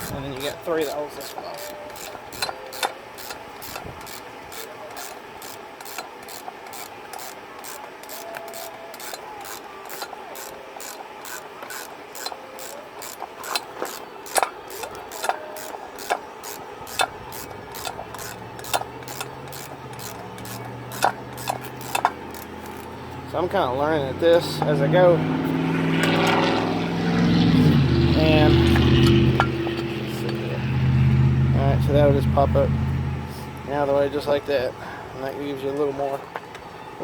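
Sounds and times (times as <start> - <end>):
tools clinking against metal: 0.0 - 22.9
ratchet wrench clicking: 0.0 - 23.0.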